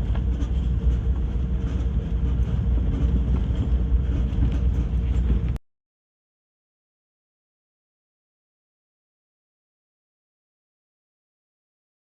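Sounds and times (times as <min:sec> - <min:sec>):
vehicle driving rumble: 0:00.0 - 0:05.6.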